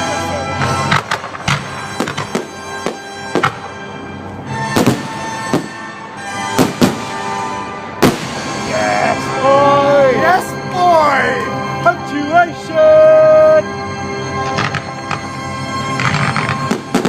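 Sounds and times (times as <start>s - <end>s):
droning music: 0.0s - 17.0s
fireworks bangs and pops: 0.6s - 3.6s, 4.7s - 5.8s, 6.6s - 7.2s, 8.0s - 8.5s, 15.9s - 17.0s.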